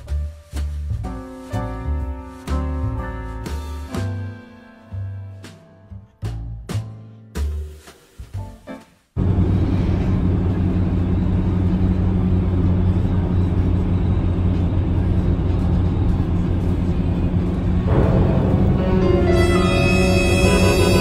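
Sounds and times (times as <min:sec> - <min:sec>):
road noise: 0:09.2 - 0:21.0
vehicle engine drone: 0:09.2 - 0:21.0.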